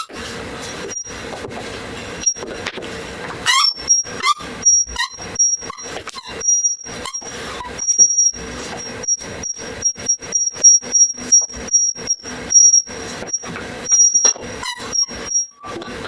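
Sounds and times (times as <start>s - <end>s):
stool squeaking and knocking: 0.8s - 8.9s
high whistle-like tone: 3.4s - 15.8s.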